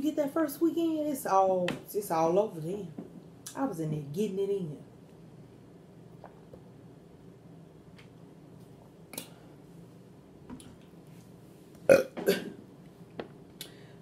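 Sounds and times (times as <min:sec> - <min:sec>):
woman belching: 0:11.9 - 0:12.6.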